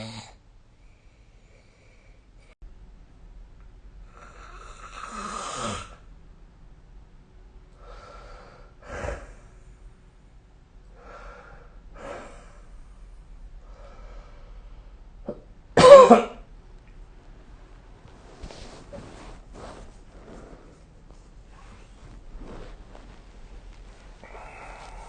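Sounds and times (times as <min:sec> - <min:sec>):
person coughing: 0:15.3 - 0:16.4
person breathing noisily: 0:24.2 - 0:25.0.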